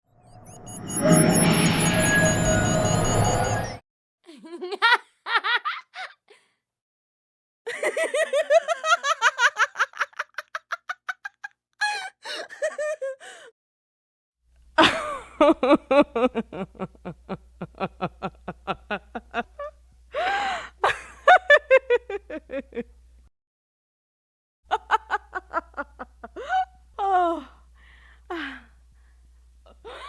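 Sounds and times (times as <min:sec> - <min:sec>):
low hum: 0:00.1 - 0:03.8
women laughing: 0:04.3 - 0:06.4, 0:07.7 - 0:13.4, 0:14.8 - 0:23.0, 0:24.7 - 0:27.3, 0:29.7 - 0:30.0.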